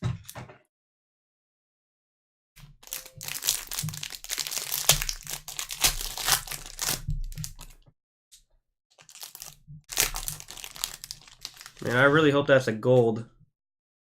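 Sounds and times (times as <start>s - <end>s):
card pack wrappers crinkling: 2.8s - 7.8s, 9.0s - 12.2s.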